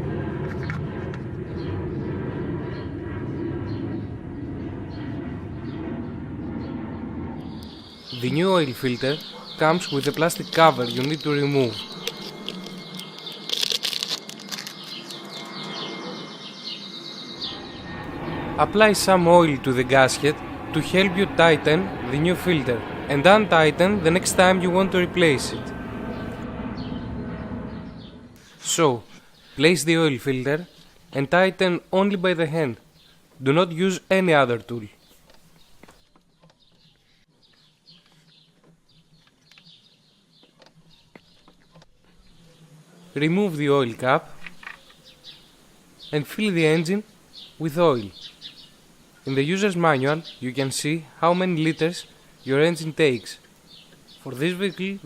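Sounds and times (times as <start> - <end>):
small birds chirping: 4.9 - 19.1, 32.9 - 33.3, 34.8 - 42.8, 44.6 - 55.0.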